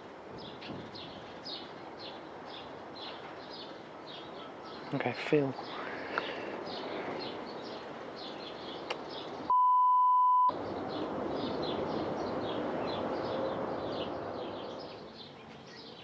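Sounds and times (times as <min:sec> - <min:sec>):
electronic censor bleep: 0:09.5 - 0:10.5.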